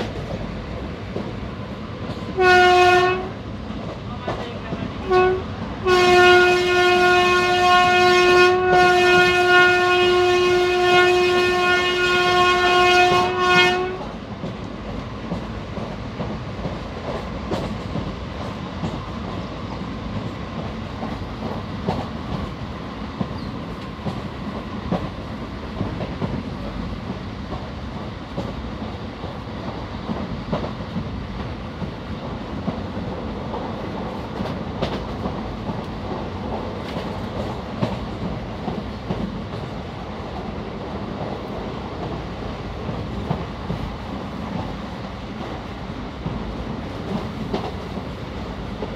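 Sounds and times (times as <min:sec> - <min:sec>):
rumble of moving train: 0:00.0 - 0:48.9
train horn blast: 0:02.3 - 0:03.4, 0:05.0 - 0:14.2
wheels clicking over rail joints: 0:13.8 - 0:22.6.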